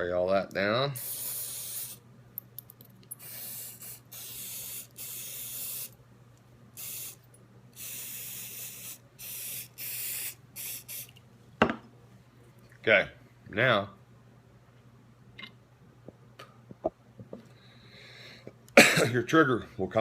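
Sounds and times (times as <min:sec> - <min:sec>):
aerosol spray can hissing: 0:01.0 - 0:02.0, 0:03.2 - 0:06.0, 0:06.8 - 0:07.2, 0:07.8 - 0:11.1.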